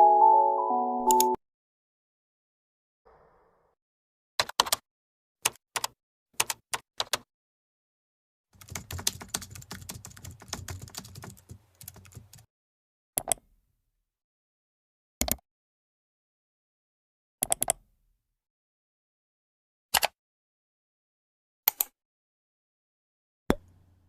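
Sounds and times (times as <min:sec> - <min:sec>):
computer keyboard typing: 0:04.4 - 0:04.8, 0:05.5 - 0:07.2, 0:08.6 - 0:12.5.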